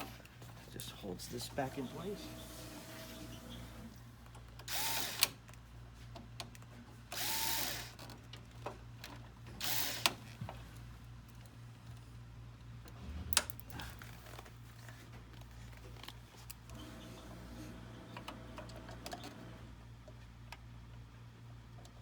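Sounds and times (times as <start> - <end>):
cordless drill whining: 4.7 - 5.4, 7.2 - 8.0, 9.6 - 10.2.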